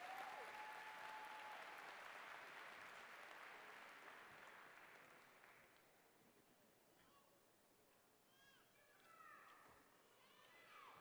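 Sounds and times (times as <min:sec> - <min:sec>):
audience applause: 0:00.0 - 0:05.1.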